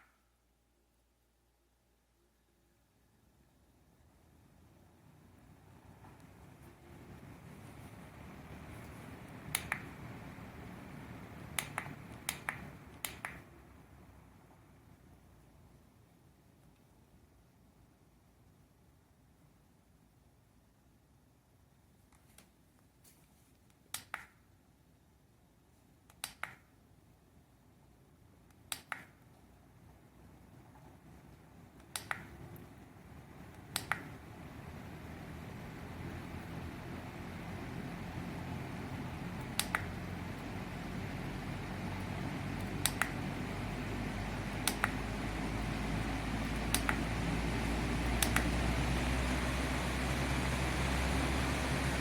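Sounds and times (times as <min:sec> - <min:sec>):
faint room noise: 0:00.0 - 0:52.0
fan air rushing: 0:04.8 - 0:14.6, 0:30.1 - 0:52.0
sharp clicks: 0:08.8 - 0:10.0, 0:11.5 - 0:13.5, 0:28.5 - 0:29.2, 0:31.8 - 0:32.7, 0:33.5 - 0:34.2, 0:39.4 - 0:40.1, 0:42.6 - 0:43.2, 0:44.6 - 0:45.0, 0:46.6 - 0:47.1, 0:48.2 - 0:48.6
double clicks: 0:09.5 - 0:09.9, 0:28.5 - 0:29.2, 0:31.8 - 0:32.4, 0:39.6 - 0:40.0, 0:44.6 - 0:45.0.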